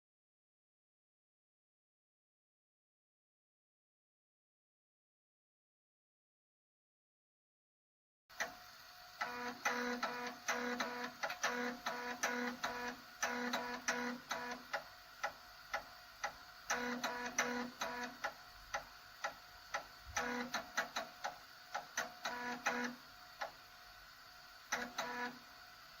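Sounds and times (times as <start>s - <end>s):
stepper motor buzzing: 9.1s - 23.6s, 24.6s - 25.6s
floppy drive clicks: 9.2s - 23.6s, 24.7s - 25.4s.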